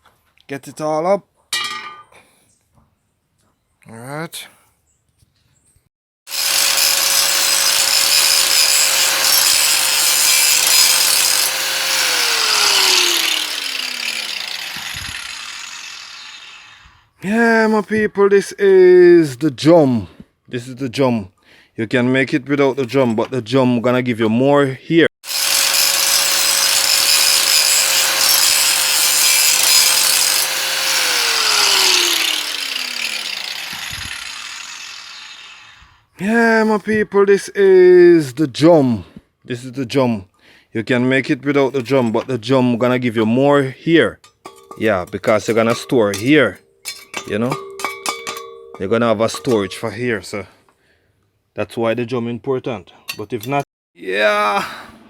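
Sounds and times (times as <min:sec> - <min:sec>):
electric power tool whining: 0:06.3 - 0:17.0, 0:25.2 - 0:36.1.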